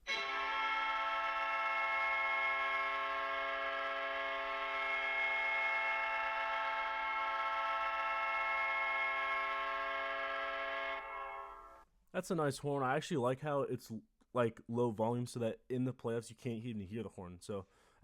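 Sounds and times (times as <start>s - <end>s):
goal horn blast: 0.0s - 11.8s.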